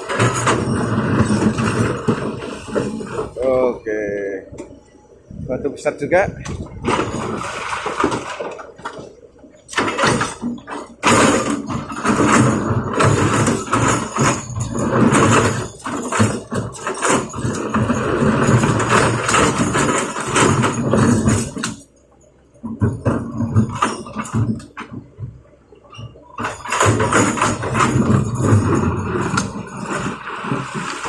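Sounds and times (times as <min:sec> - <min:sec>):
rocks clattering and tumbling: 0:06.2 - 0:21.9, 0:26.2 - 0:31.0.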